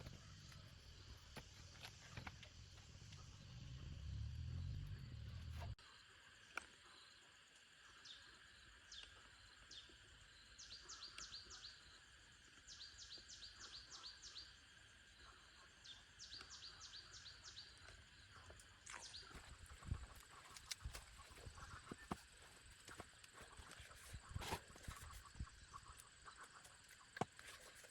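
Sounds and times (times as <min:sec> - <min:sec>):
small bird chirping: 0:08.0 - 0:14.6, 0:15.8 - 0:27.9.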